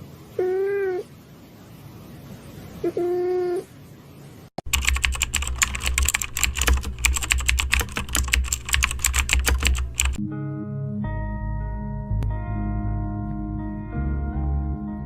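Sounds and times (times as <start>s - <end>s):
computer keyboard typing: 4.6s - 10.2s.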